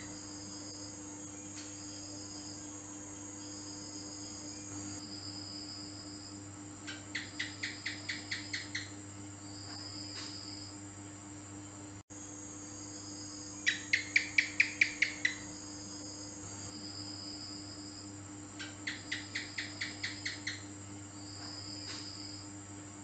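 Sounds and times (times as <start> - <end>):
steady low hum: 0.0 - 23.0
gecko chirping: 6.9 - 8.9, 13.6 - 15.5, 18.6 - 20.7.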